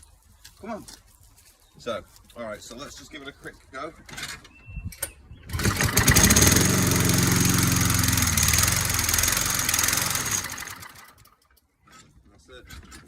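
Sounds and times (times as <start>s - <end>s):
lawn mower engine running: 5.5s - 11.5s.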